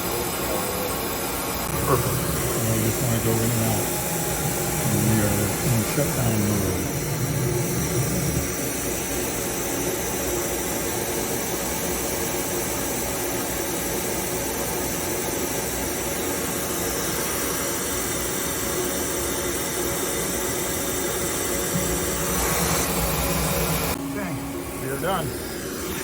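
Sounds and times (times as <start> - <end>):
machine hiss: 0.0 - 11.4, 20.8 - 26.0
lathe mechanical hum: 0.0 - 26.0.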